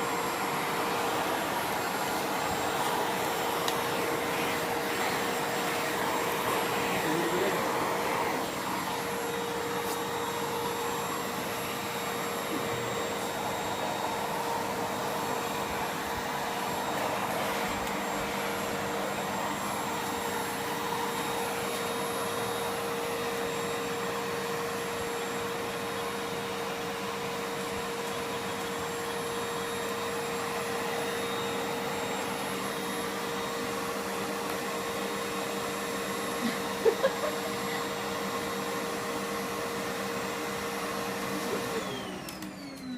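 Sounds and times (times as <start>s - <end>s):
vacuum cleaner running: 0.0s - 42.9s.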